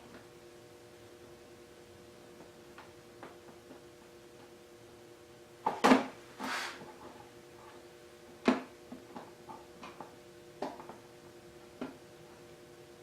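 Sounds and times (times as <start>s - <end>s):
faint steady hum: 0.0s - 13.0s
short scrape: 6.4s - 6.9s
clicks and knocks of hand work: 8.4s - 11.0s.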